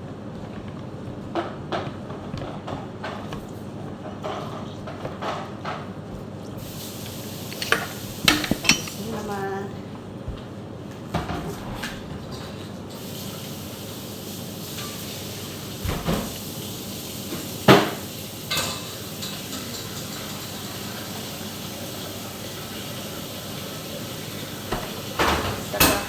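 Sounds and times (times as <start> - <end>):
steady hiss: 6.6 - 9.5
pots and utensils clinking: 7.1 - 9.4, 24.0 - 26.0.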